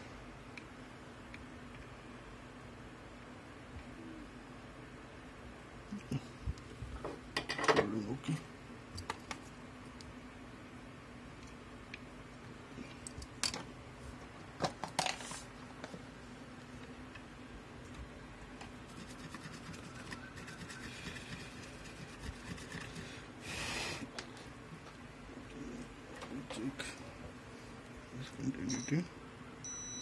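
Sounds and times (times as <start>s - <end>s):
steady low hum: 0.0s - 30.0s
small tools scraping on circuit board: 18.9s - 23.0s.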